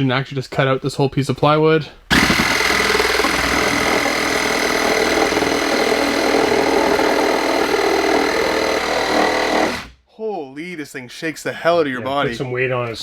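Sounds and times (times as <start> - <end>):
power saw cutting plywood: 2.1 - 9.9.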